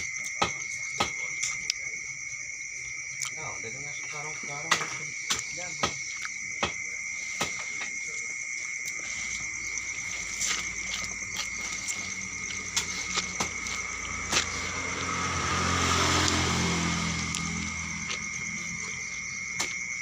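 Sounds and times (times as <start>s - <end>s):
crickets chirping: 0.0s - 20.0s
passing vehicle engine: 9.0s - 20.0s.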